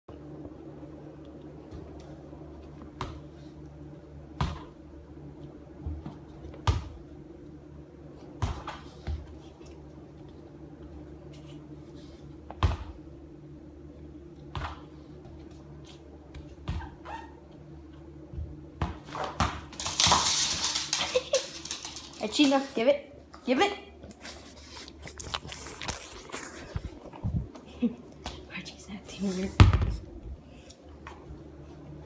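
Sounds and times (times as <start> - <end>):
steady low hum: 0.1 - 32.0
soccer ball thumps: 8.4 - 8.8, 12.6 - 13.0, 18.3 - 19.8, 29.6 - 30.1.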